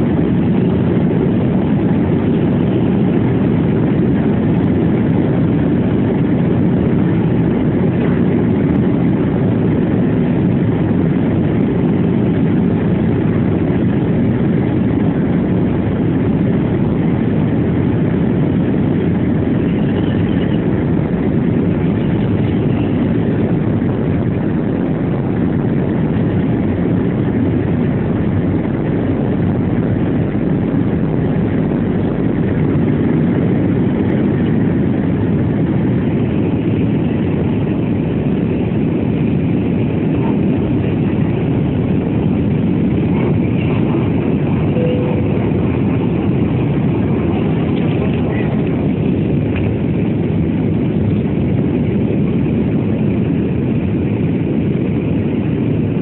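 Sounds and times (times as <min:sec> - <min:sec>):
jet engines roaring in cabin: 0:00.0 - 0:56.0
rushing air: 0:20.7 - 0:56.0.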